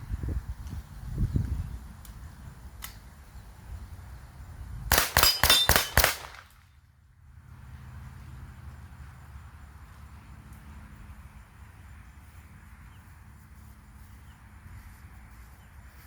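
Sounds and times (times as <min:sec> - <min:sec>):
air rifle shots: 0:04.9 - 0:06.6.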